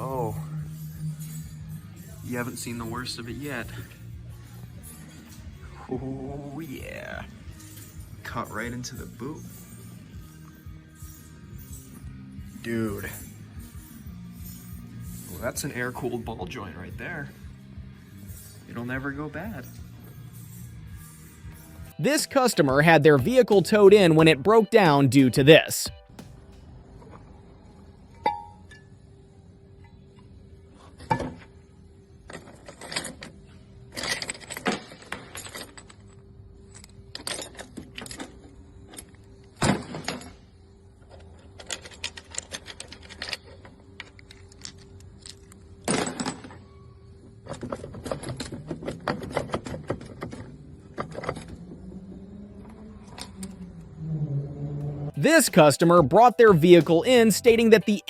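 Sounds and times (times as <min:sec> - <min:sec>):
metal tools clinking: 0:06.5 - 0:16.4, 0:32.2 - 0:52.0.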